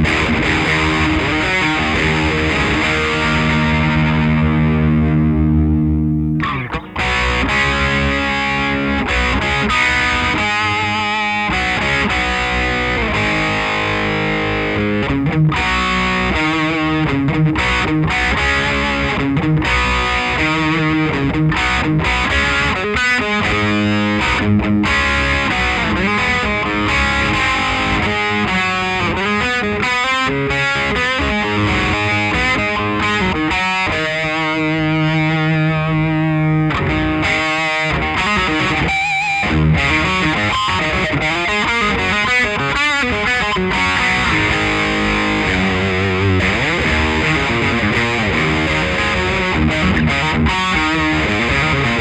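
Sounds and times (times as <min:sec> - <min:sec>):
distorted electric guitar: 0:00.0 - 0:52.0.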